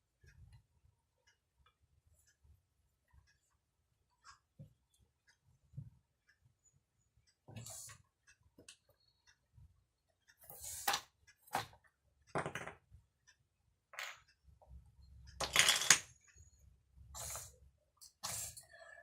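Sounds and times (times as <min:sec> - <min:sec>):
wooden toy blocks clattering: 0:15.4 - 0:16.1.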